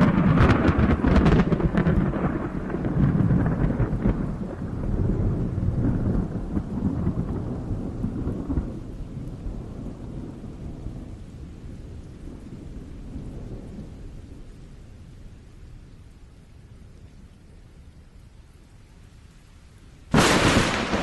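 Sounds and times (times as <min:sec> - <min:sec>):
rolling thunder: 0:00.0 - 0:15.3, 0:20.1 - 0:21.0.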